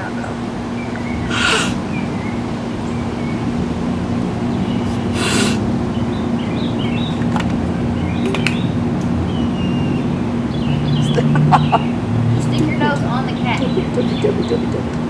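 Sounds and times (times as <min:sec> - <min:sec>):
steady low hum: 0:00.0 - 0:15.0
nasal spray pump hiss: 0:01.3 - 0:01.8, 0:05.2 - 0:05.6.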